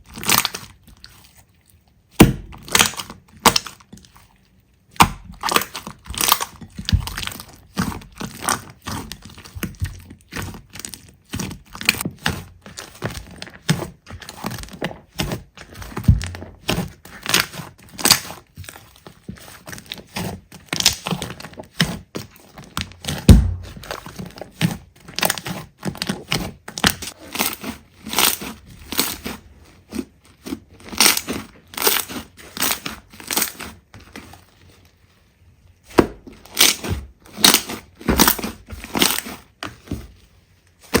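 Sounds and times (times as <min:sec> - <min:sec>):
slime squishing crackles and pops: 0:00.0 - 0:00.8, 0:02.2 - 0:04.0, 0:05.0 - 0:13.4, 0:20.6 - 0:22.0, 0:30.9 - 0:33.7, 0:35.9 - 0:39.5
heavier thud: 0:02.2 - 0:02.6, 0:23.3 - 0:23.8.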